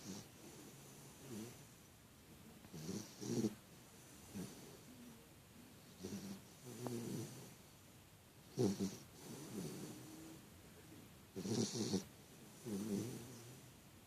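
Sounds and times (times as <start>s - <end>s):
person snoring: 11.4s - 13.6s.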